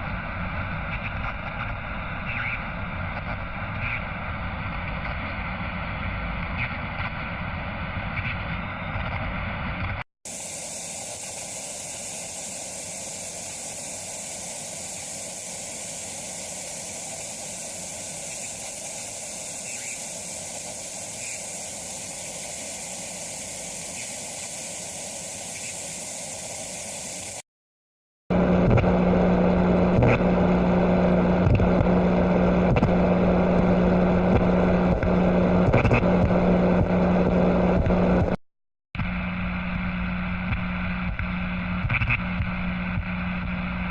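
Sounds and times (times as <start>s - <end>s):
noisy drone with low hum: 0.0s - 27.4s, 28.3s - 38.4s, 39.0s - 43.9s
steady hiss-like noise: 10.3s - 27.4s.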